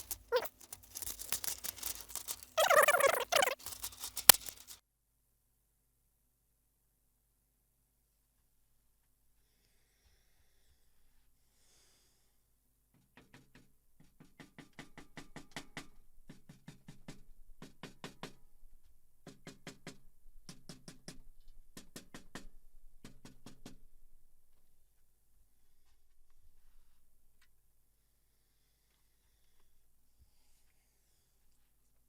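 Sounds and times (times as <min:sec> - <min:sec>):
faint clicks of handling: 0:00.0 - 0:02.6, 0:03.2 - 0:04.8.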